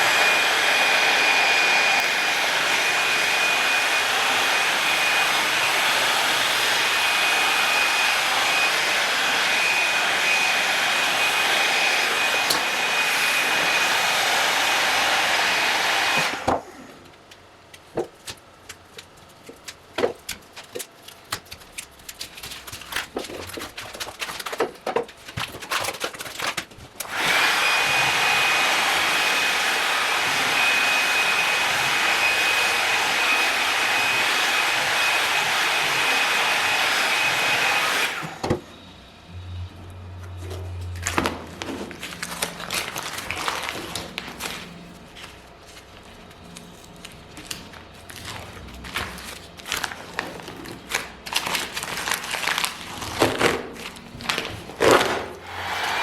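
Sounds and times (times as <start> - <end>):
power tool motor whirring: 55.4 - 56.0.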